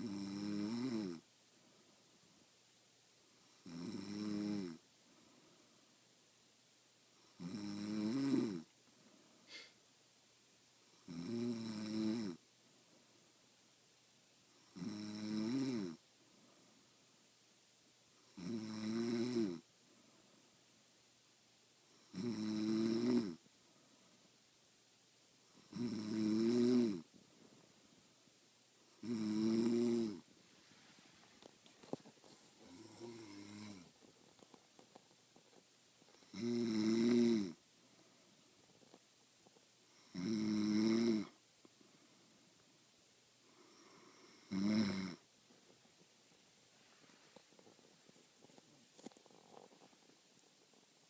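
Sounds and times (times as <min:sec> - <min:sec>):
woman snoring: 0:00.0 - 0:01.2, 0:03.6 - 0:04.8, 0:07.4 - 0:08.7, 0:11.0 - 0:12.4, 0:14.7 - 0:16.0, 0:18.4 - 0:19.6, 0:22.1 - 0:23.4, 0:25.6 - 0:27.1, 0:29.0 - 0:30.2, 0:32.6 - 0:33.9, 0:36.2 - 0:37.6, 0:39.9 - 0:41.4, 0:43.6 - 0:45.2.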